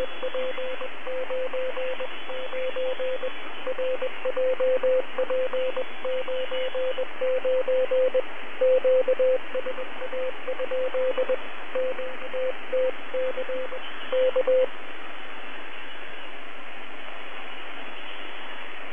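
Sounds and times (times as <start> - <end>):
morse code tone: 0.0 - 14.7
radio static hiss: 0.0 - 16.4.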